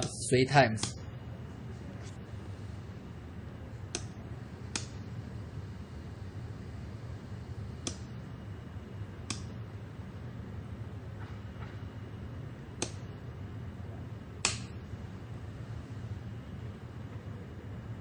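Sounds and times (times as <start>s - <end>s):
steady low hum: 0.0s - 18.0s
light switch clicking: 3.9s - 4.1s, 4.7s - 5.0s, 7.8s - 8.1s, 9.2s - 9.5s, 12.8s - 13.0s, 14.4s - 14.8s.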